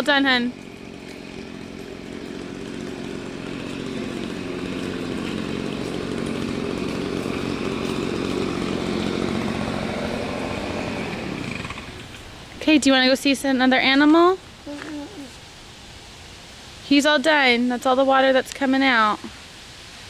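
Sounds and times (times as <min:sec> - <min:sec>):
low buzz: 0:00.0 - 0:12.4
fountain water spraying: 0:00.2 - 0:20.0.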